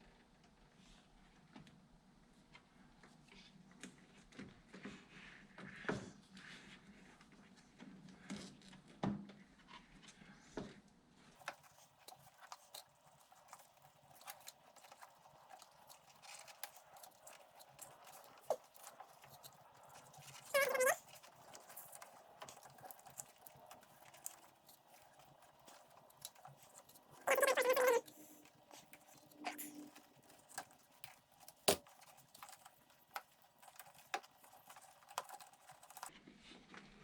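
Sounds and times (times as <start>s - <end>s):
clicks and rustles of handling: 11.4s - 36.1s
tape squealing off roll: 19.9s - 22.1s, 25.0s - 32.6s.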